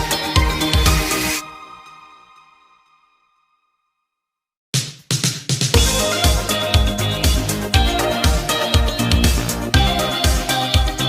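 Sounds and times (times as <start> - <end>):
electronic music held note: 5.8 - 11.0.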